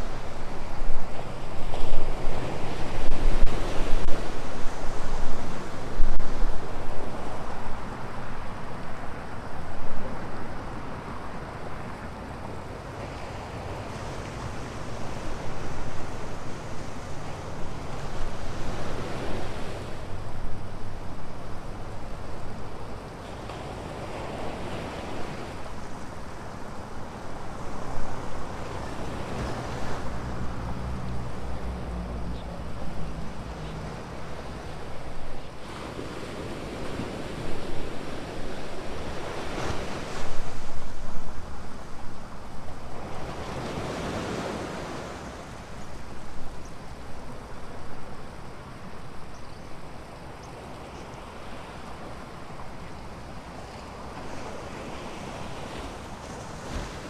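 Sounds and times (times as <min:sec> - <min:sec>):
ocean surf breaking: 0:00.0 - 0:48.5
low engine hum: 0:28.9 - 0:35.0.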